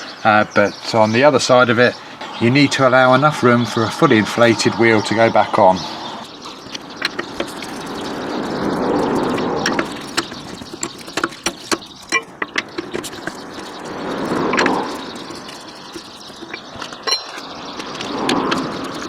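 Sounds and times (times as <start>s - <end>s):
metallic clicks and knocks: 9.6s - 13.7s, 15.4s - 19.0s.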